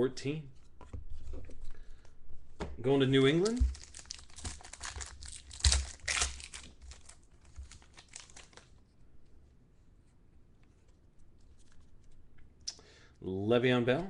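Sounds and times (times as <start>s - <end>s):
plastic wrapper crinkling and tearing: 3.4s - 8.8s.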